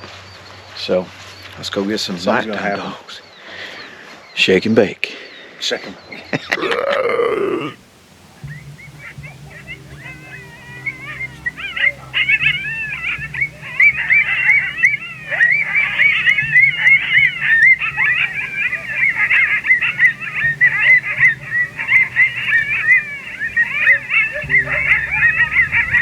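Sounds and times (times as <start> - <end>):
coyotes yipping and howling: 7.4 - 26.0.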